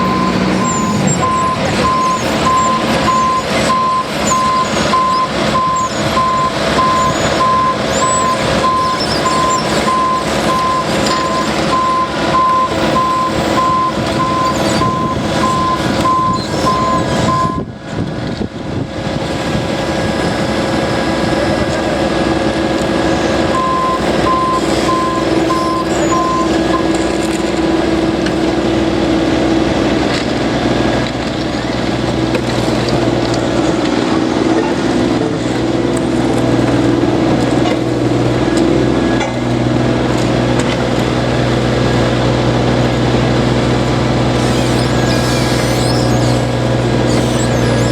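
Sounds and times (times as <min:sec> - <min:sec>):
backup alarm beeping: 0:00.0 - 0:17.6
diesel engines running: 0:00.0 - 0:47.9.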